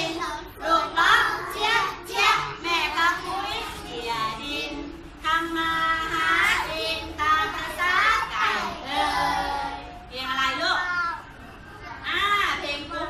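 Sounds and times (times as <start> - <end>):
young children singing: 0.0 - 10.1.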